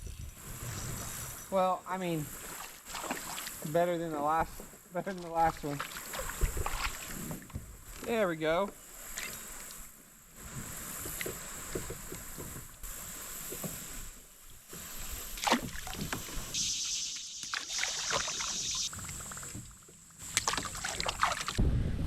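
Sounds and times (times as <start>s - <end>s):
steady hiss: 0.0s - 21.6s
water sloshing around kayak: 2.2s - 21.6s
low rumble: 21.6s - 22.0s.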